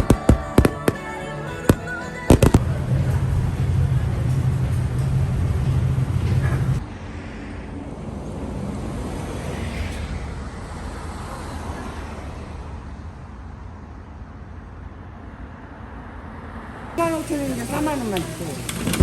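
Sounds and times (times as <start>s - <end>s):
loud low hum: 0.0s - 7.0s
steady low traffic rumble: 0.0s - 19.0s.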